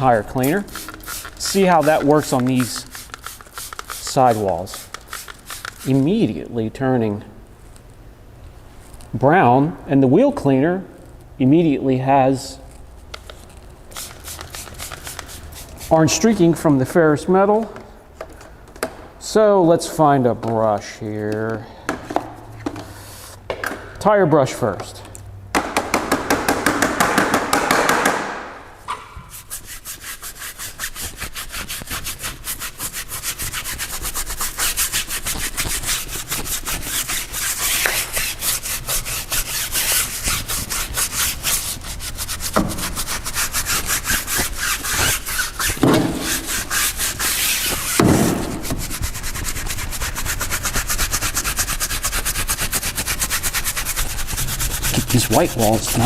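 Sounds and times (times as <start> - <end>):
brush scrubbing tire: 0.0 - 6.0, 29.0 - 56.0.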